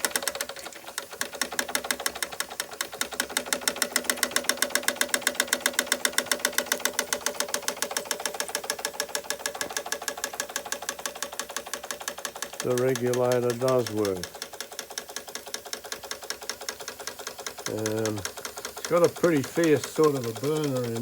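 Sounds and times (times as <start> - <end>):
toy steam engine running: 0.0 - 21.0.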